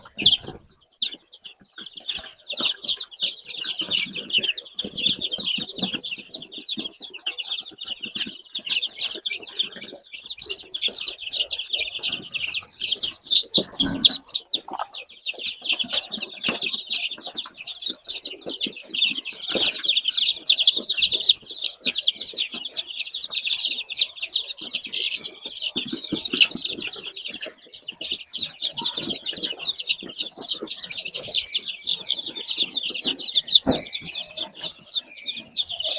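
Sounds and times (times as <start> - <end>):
chicks peeping: 0.0 - 35.9.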